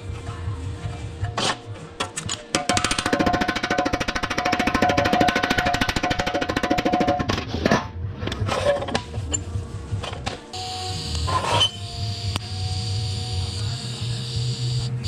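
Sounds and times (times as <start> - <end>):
knocks and clatters: 1.3 - 9.3.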